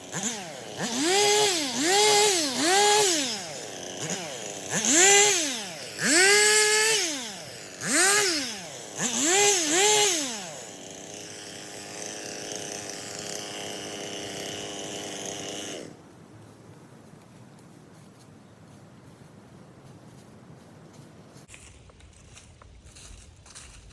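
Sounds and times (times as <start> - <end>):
chainsaw revving and idling: 0.0 - 16.0.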